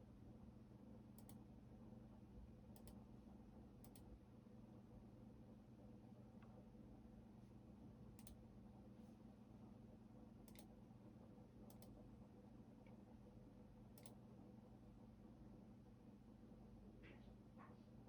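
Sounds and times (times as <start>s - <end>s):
low steady hum: 0.0s - 18.0s
computer keyboard keystrokes: 3.8s - 4.1s, 14.0s - 14.2s.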